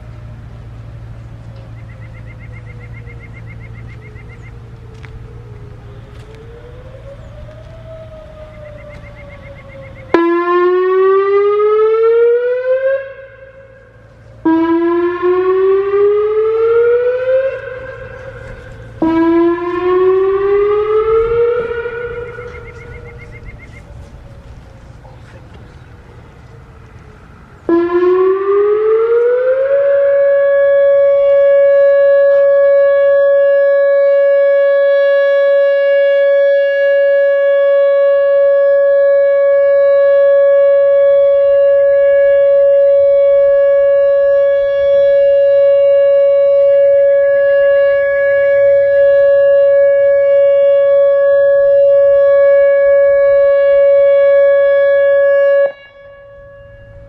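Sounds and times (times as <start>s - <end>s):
outdoor warning siren: 0.0s - 57.0s.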